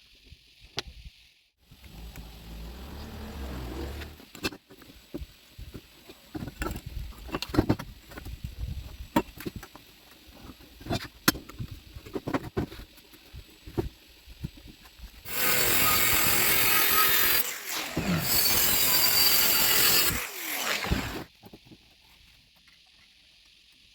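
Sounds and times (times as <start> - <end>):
angle grinder cutting steel: 1.8 - 4.2, 15.3 - 21.3.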